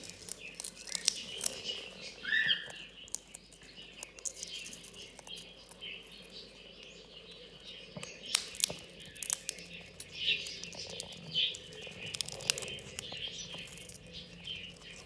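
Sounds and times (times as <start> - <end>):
peanut shells cracking: 0.0 - 15.0
parrot chirping: 0.6 - 2.8.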